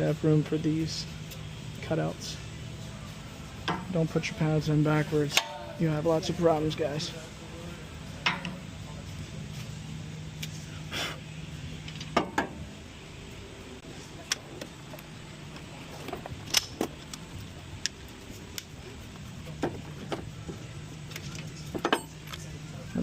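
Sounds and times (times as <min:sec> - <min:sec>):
steady low hum: 0:00.0 - 0:23.0
metal tools clinking: 0:21.1 - 0:22.6.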